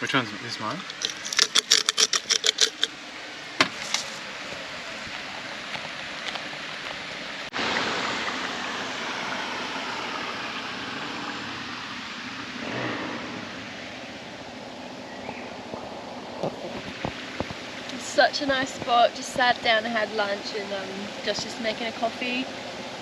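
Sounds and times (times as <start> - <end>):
creek water flowing: 0.0 - 23.0.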